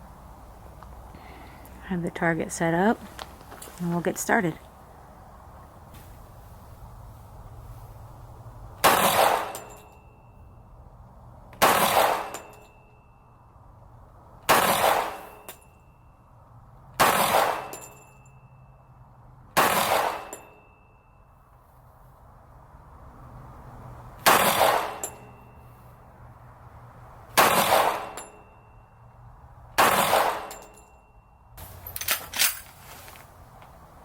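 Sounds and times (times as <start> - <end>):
pistol shots: 8.8 - 9.6, 11.6 - 12.5, 14.5 - 15.4, 17.0 - 17.8, 19.6 - 20.5, 24.2 - 25.1, 27.4 - 28.2, 29.8 - 30.6
short metallic ring: 9.1 - 10.8, 11.9 - 13.6, 15.1 - 16.4, 17.5 - 19.1, 20.1 - 21.5, 24.4 - 26.0, 27.9 - 29.2, 29.9 - 33.1.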